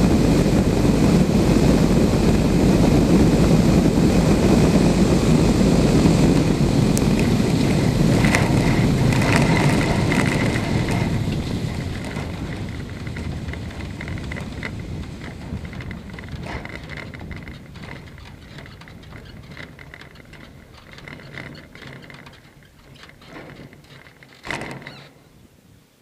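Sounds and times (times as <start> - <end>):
rushing air in cockpit: 0.0 - 21.0
small rattles: 6.2 - 25.3
loud clunk: 8.2 - 25.2.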